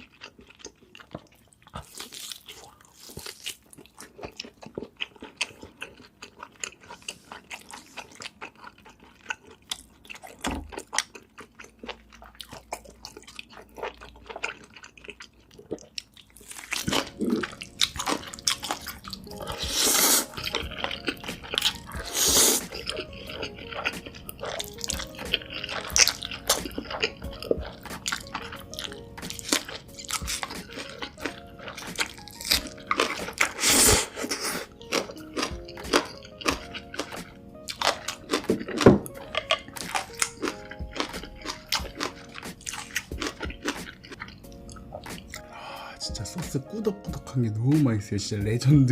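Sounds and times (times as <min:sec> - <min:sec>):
crunching and wet chewing: 0:00.0 - 0:47.4
background music: 0:16.3 - 0:48.9.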